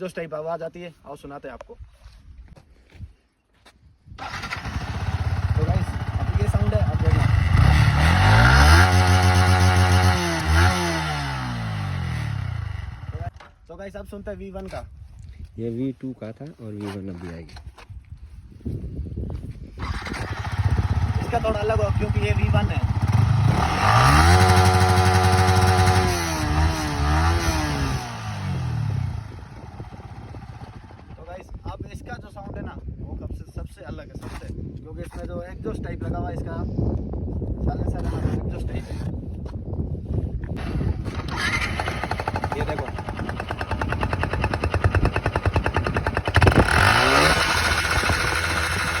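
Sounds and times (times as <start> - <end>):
motorcycle engine revving: 4.2 - 13.4, 19.8 - 31.2, 40.6 - 49.0.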